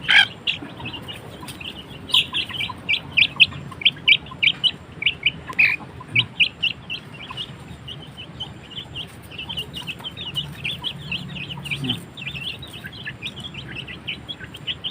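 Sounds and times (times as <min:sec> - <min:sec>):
chicks peeping: 0:00.0 - 0:14.9.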